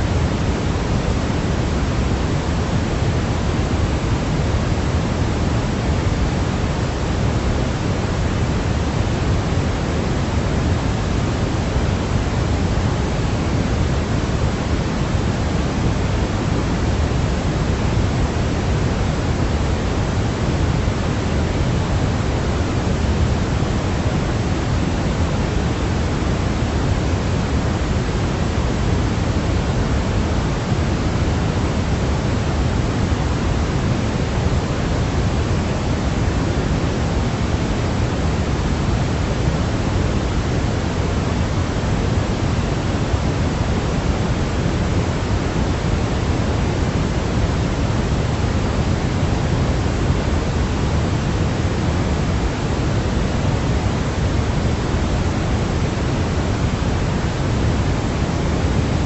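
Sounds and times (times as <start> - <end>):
steady pink noise hiss: 0.0 - 59.0.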